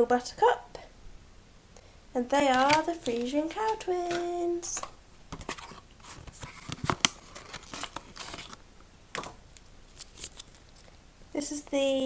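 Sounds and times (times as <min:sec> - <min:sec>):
paper and plastic crinkling: 0:02.2 - 0:11.0.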